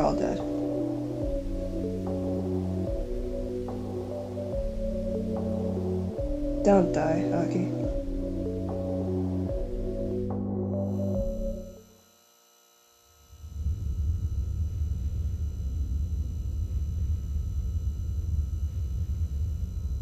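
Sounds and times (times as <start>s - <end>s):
low rumbling drone: 0.0s - 11.8s, 13.4s - 20.0s
background music: 0.0s - 11.9s.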